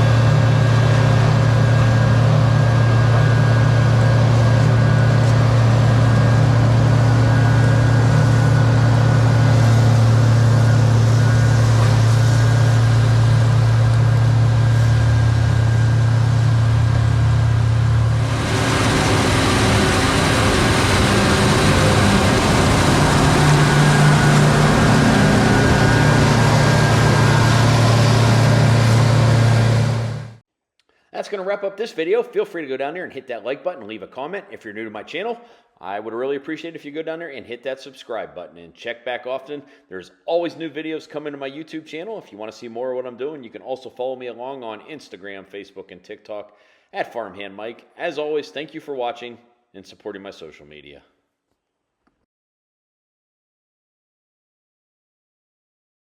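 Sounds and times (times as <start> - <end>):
diesel machinery running: 0.0 - 30.4.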